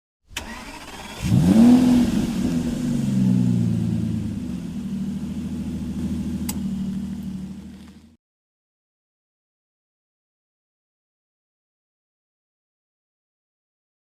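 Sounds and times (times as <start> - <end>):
ignition click: 0.3 - 1.4, 5.7 - 8.1
car engine starting and idling: 0.3 - 8.2.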